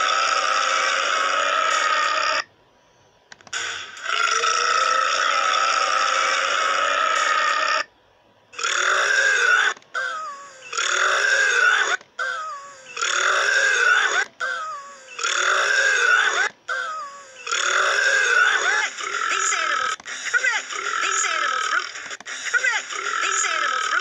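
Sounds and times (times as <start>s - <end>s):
loud burps: 3.6s - 7.9s, 8.6s - 9.7s, 10.7s - 11.8s, 13.0s - 14.1s, 15.2s - 16.4s, 17.4s - 20.0s.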